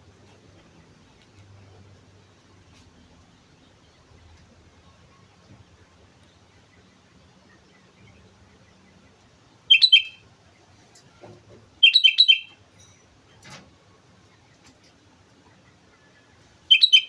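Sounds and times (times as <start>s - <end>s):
bulbul singing: 9.6s - 10.3s, 11.8s - 12.6s, 16.7s - 17.0s
faint knock: 11.2s - 11.7s.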